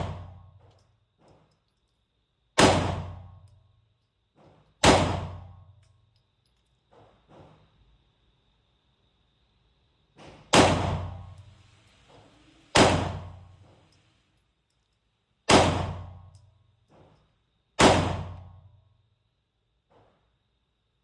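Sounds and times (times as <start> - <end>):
pistol shots echoing indoors: 0.0 - 0.8, 1.6 - 3.8, 4.6 - 6.3, 10.4 - 11.5, 12.7 - 13.7, 15.4 - 16.5, 17.7 - 18.8.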